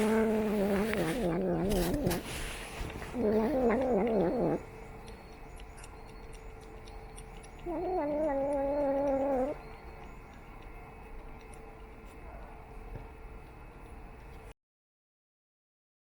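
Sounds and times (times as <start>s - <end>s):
cat yowling: 0.0s - 2.3s, 3.0s - 4.7s, 7.1s - 9.7s.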